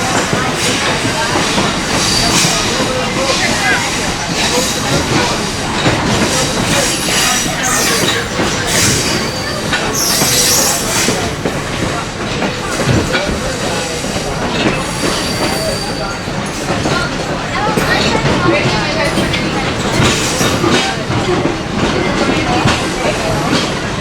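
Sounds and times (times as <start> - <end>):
train car rumbling over rails: 0.0 - 24.0
wheel squeals: 4.4 - 11.4, 14.6 - 21.3.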